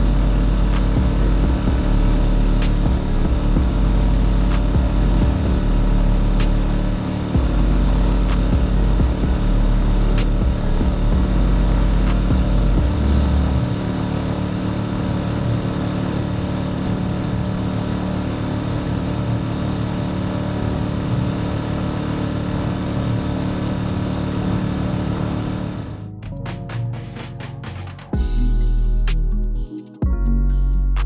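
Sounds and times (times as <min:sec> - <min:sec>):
rushing noise: 0:00.0 - 0:29.1.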